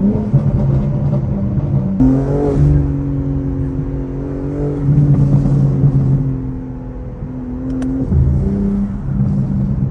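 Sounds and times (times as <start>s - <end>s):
car engine running loudly: 0.0s - 9.9s.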